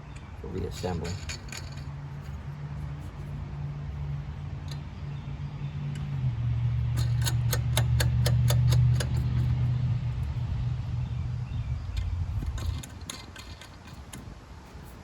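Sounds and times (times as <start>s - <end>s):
ratchet wrench clicking: 6.9s - 9.6s.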